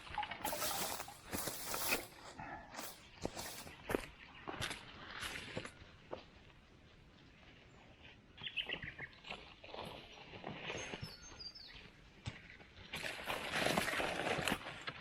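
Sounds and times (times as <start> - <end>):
loud rustling: 0.4 - 3.7.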